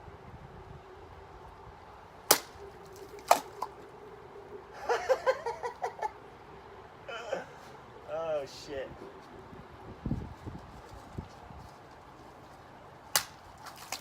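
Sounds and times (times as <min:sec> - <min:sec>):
sword cutting target cracks: 0:02.3 - 0:03.7, 0:13.2 - 0:14.0.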